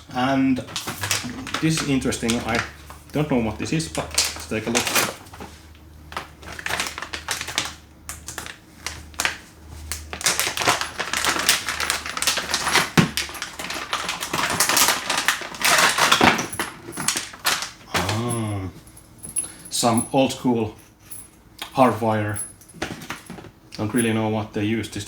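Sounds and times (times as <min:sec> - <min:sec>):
packaging crinkling: 0:00.6 - 0:18.5.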